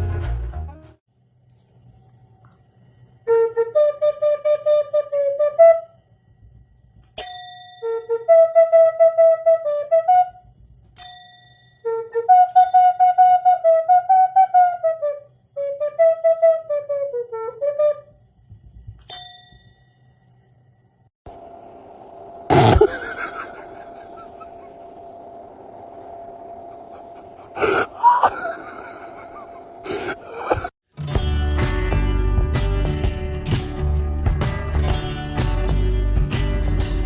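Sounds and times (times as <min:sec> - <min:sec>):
flute-like melody: 0:03.3 - 0:06.0, 0:07.8 - 0:10.4, 0:11.8 - 0:18.1
bright bell ding: 0:07.2 - 0:07.8, 0:11.0 - 0:11.8, 0:19.1 - 0:20.0.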